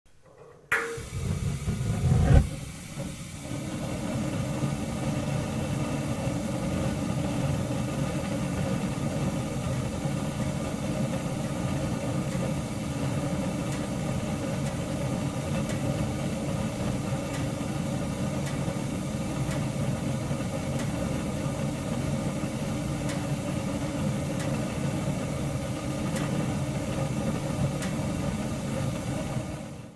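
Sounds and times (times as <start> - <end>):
gas burner rumbling: 0.2 - 29.9
gas burner igniting burst: 0.7 - 24.0.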